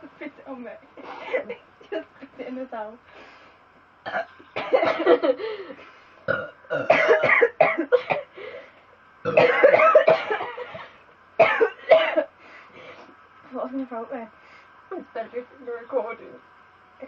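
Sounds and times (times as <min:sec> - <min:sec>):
woman burping: 0:04.0 - 0:05.2, 0:06.3 - 0:08.3, 0:09.2 - 0:10.6.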